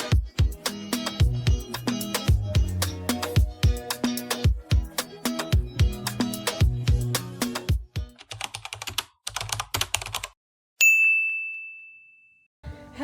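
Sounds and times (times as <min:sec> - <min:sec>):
music with a beat: 0:00.0 - 0:08.2
bright ding ringing: 0:10.8 - 0:12.5.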